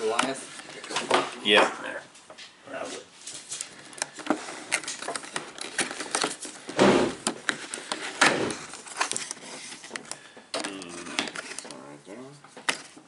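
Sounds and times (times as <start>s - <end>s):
cardboard and plastic rustling: 0.0s - 1.4s, 3.0s - 13.0s
loud rustling knocks: 6.6s - 7.5s, 8.1s - 8.7s.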